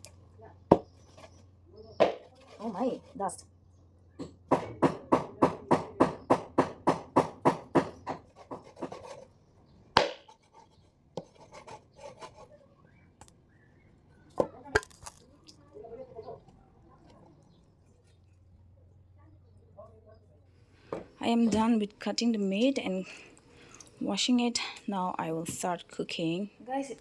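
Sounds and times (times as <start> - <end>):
knife chopping meat: 4.2 - 9.2, 10.0 - 10.4.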